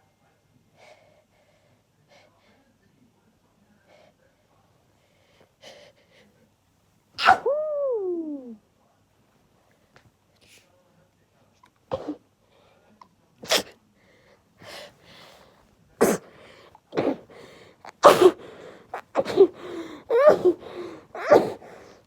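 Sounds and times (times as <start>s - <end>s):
girl sneezing: 7.2s - 8.6s, 13.4s - 13.7s, 16.0s - 22.0s.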